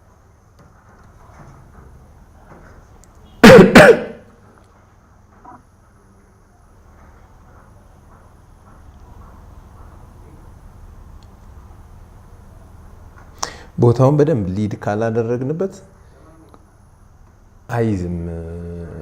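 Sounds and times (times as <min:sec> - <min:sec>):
faint low hum: 0:00.0 - 0:19.0
person's loud vocal bursts: 0:03.4 - 0:04.2.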